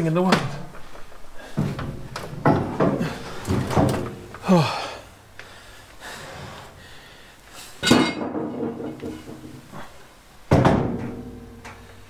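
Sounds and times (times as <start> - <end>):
handling knocks: 1.4 - 4.5, 7.8 - 9.9, 10.5 - 11.9
heavy metal part clunking: 7.8 - 9.8.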